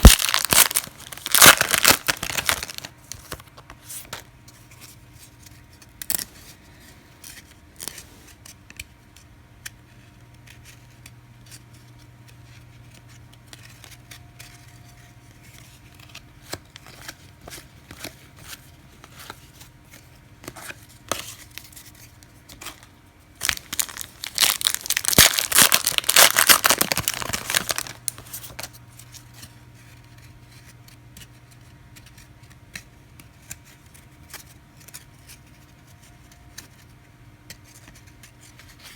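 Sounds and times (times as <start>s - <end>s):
wrapper tearing and crinkling: 0.0s - 2.9s, 23.4s - 28.7s.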